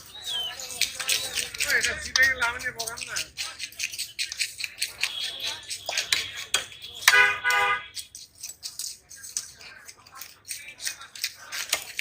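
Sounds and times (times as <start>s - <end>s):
knife and metal tapping: 0.0s - 12.0s
horn-like tone: 7.1s - 8.0s.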